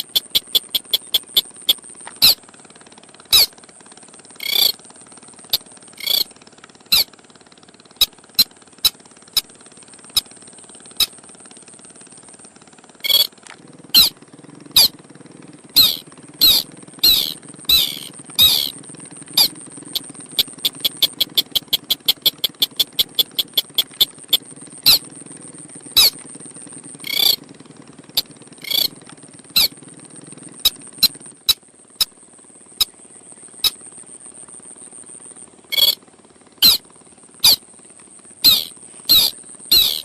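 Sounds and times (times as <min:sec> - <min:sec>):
crake lure call: 0:00.0 - 0:02.4, 0:03.3 - 0:03.5, 0:04.4 - 0:04.8, 0:05.5 - 0:06.3, 0:13.0 - 0:13.3, 0:14.0 - 0:14.2, 0:15.8 - 0:18.8, 0:19.4 - 0:25.0, 0:26.0 - 0:26.2, 0:27.0 - 0:27.4, 0:28.2 - 0:29.0, 0:33.6 - 0:33.8, 0:35.7 - 0:36.0, 0:36.6 - 0:36.8, 0:37.4 - 0:37.6, 0:38.4 - 0:40.0
low hum: 0:00.0 - 0:02.5, 0:04.2 - 0:04.8, 0:05.5 - 0:07.1, 0:15.6 - 0:27.5
steady high whine: 0:04.4 - 0:04.8.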